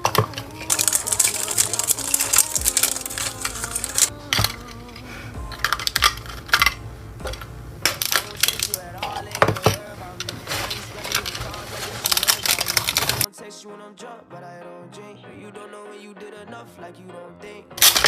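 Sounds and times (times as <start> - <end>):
plastic packaging clicks and rattles: 0.0 - 5.0, 5.6 - 13.3, 17.8 - 18.0
quiet background music: 0.0 - 18.0.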